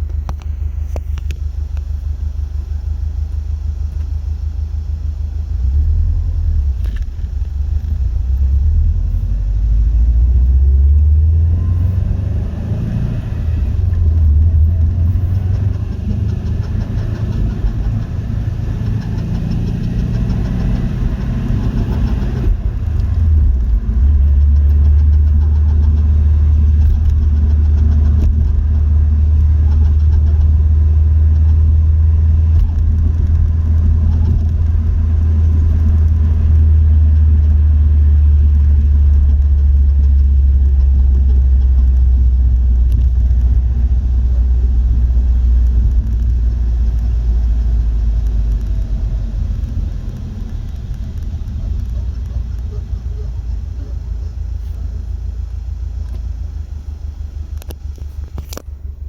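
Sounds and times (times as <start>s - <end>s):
car engine rumbling: 0.0s - 59.0s.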